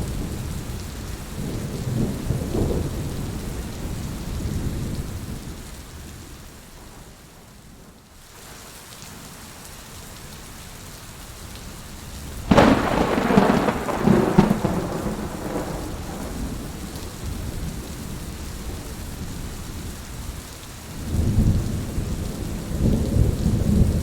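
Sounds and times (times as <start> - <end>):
heavy rain falling: 0.0 - 24.0
thunderclap rumbling: 12.5 - 19.1, 21.1 - 24.0.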